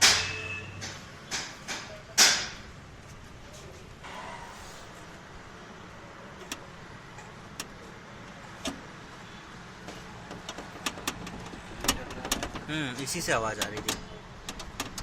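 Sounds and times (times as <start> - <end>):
clicks and knocks of car door parts: 9.8 - 15.0.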